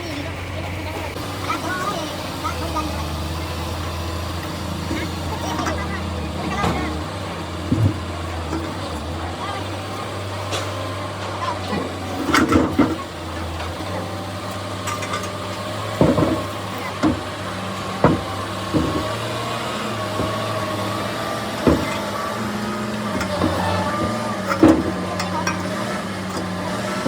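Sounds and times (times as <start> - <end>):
low engine-like hum: 0.0 - 27.0
metal knocks and clanks: 14.8 - 27.0.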